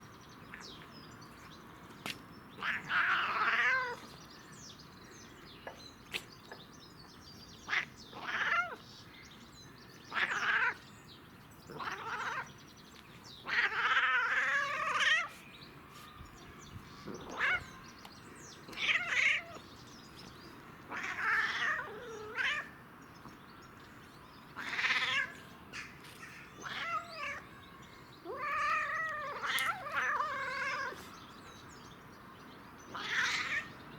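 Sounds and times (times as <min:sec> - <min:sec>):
cat yowling and meowing: 0:02.6 - 0:04.1, 0:07.7 - 0:08.8, 0:10.1 - 0:10.8, 0:11.7 - 0:12.5, 0:13.4 - 0:15.3, 0:16.3 - 0:17.8, 0:18.7 - 0:19.6, 0:20.9 - 0:22.7, 0:24.6 - 0:25.4, 0:26.6 - 0:31.1, 0:32.9 - 0:33.7.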